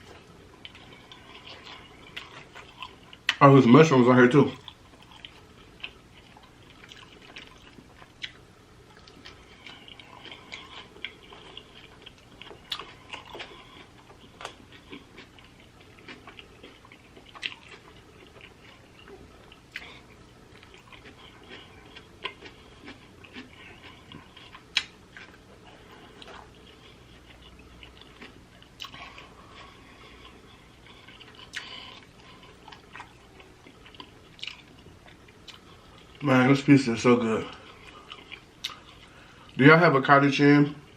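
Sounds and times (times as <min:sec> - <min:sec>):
chewing with wet mouth sounds: 0:00.0 - 0:39.8
lip smacks: 0:20.6 - 0:25.4, 0:37.8 - 0:39.1.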